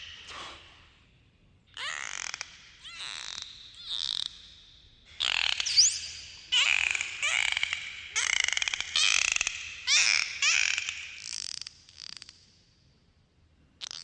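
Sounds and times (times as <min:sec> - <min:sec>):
dolphin clicking buzzes and chirps: 0:01.8 - 0:04.6, 0:05.2 - 0:12.5.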